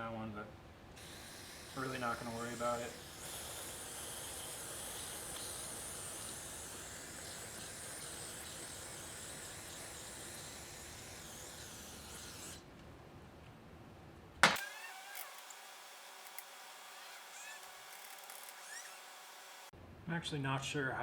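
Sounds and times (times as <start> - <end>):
aerosol can spraying: 1.0 - 12.6.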